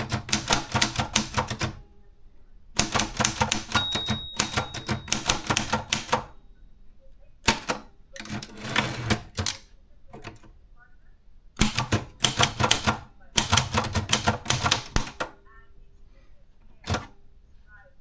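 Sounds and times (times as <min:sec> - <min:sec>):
typewriter key strikes: 0:00.0 - 0:01.8, 0:02.8 - 0:06.3, 0:07.4 - 0:09.6, 0:11.6 - 0:15.3
typewriter bell ring: 0:02.8 - 0:06.4.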